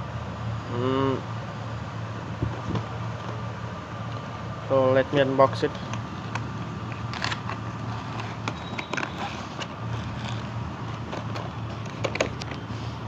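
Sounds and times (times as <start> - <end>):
steady low hum: 0.0 - 13.0
packaging clicks and crinkles: 5.9 - 12.7.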